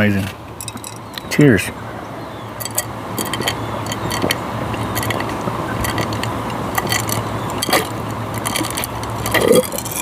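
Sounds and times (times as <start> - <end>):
ice cubes clinking in a cup: 5.0 - 10.0.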